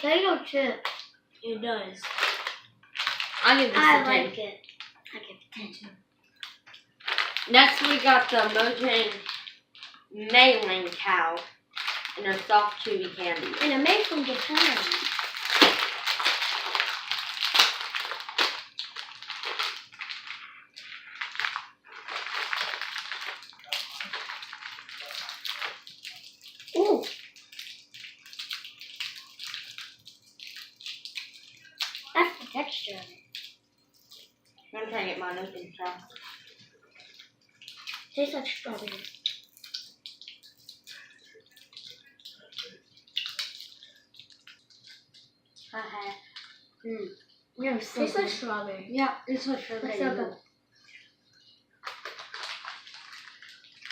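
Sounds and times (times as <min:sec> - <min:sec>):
candy wrapper tearing and crinkling: 0:02.0 - 0:04.0, 0:06.4 - 0:34.3, 0:37.2 - 0:45.0, 0:51.8 - 0:53.9
mouth chewing noises: 0:35.4 - 0:46.6.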